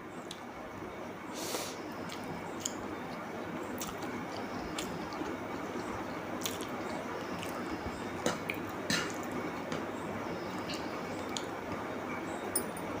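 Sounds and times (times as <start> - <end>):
steady hiss: 1.3 - 2.2
wet squishy chewing: 3.8 - 9.2.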